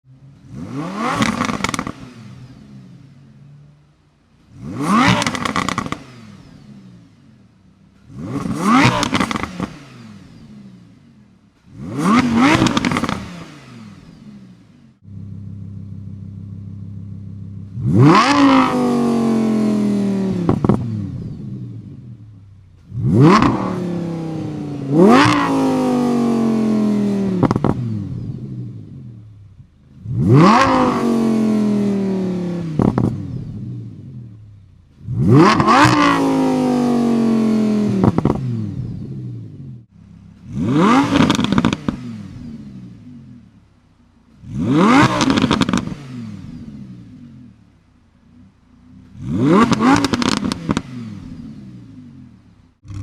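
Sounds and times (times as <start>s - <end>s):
car engine idling: 0.0s - 8.5s, 13.8s - 18.6s, 32.9s - 35.4s, 38.7s - 41.4s, 42.4s - 44.7s
car engine revving: 0.1s - 53.0s.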